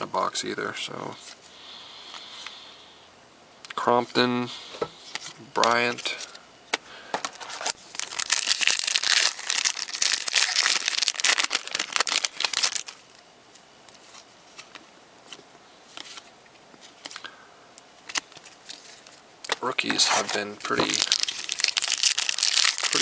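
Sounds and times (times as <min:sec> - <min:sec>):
wrapper tearing and crinkling: 0:07.4 - 0:13.0, 0:19.8 - 0:23.0.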